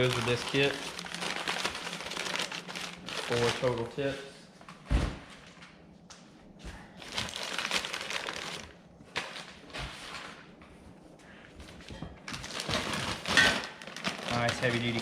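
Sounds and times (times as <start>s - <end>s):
packaging rustling and crinkling: 0.0s - 4.1s, 7.0s - 10.4s, 11.7s - 15.0s.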